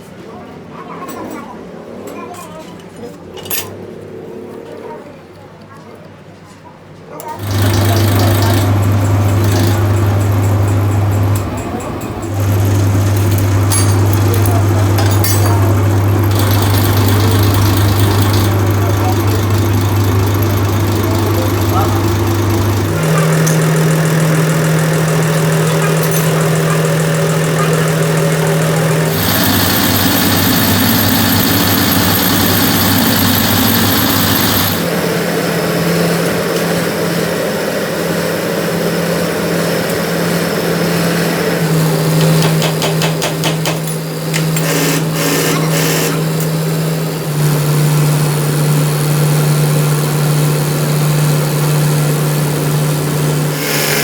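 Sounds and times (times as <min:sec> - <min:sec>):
engine humming: 0:07.4 - 0:37.4
high whine: 0:09.8 - 0:35.6.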